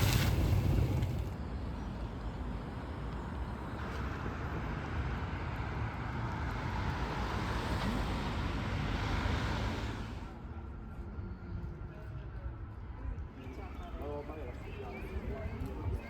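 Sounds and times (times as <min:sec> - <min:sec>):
vehicle passing by: 0:00.0 - 0:01.4, 0:04.6 - 0:10.3.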